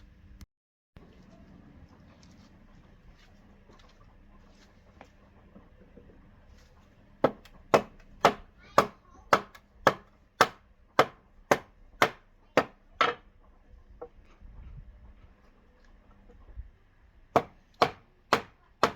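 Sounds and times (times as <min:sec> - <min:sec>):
axe chopping wood: 0:07.2 - 0:13.2, 0:17.3 - 0:18.9.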